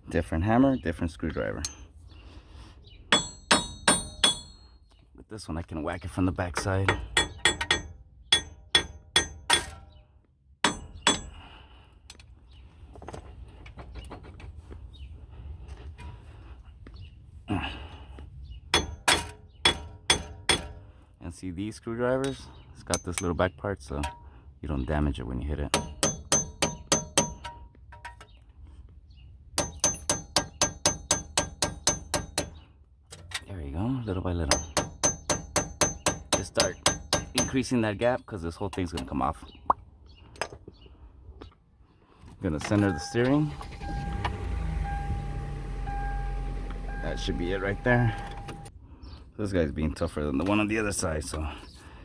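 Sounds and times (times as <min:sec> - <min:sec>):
hammer striking metal screwdriver: 0:03.1 - 0:04.7, 0:06.6 - 0:09.8, 0:10.6 - 0:11.4, 0:18.8 - 0:20.8, 0:25.8 - 0:28.2, 0:29.6 - 0:32.6, 0:34.5 - 0:37.6.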